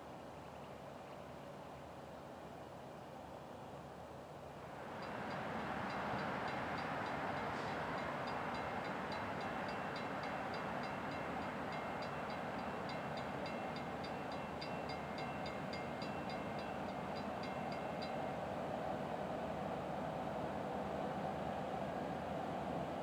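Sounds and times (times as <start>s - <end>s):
freight train rolling: 4.6s - 23.0s.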